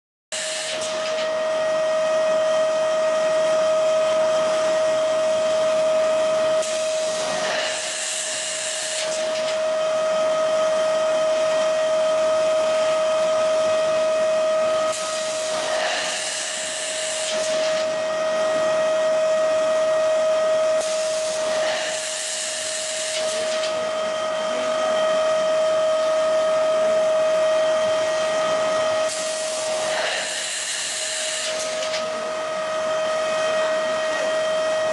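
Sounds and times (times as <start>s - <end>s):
hiss: 0.4s - 1.2s, 6.6s - 9.6s, 14.9s - 17.9s, 20.8s - 23.7s, 29.1s - 32.0s
machine motor whine: 0.4s - 34.9s.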